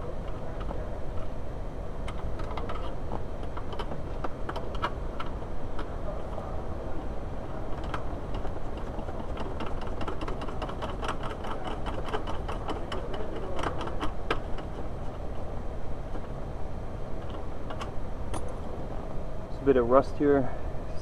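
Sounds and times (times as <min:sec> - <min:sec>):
steady low hum: 0:00.0 - 0:21.0
metallic clicks and rattles: 0:07.7 - 0:15.2.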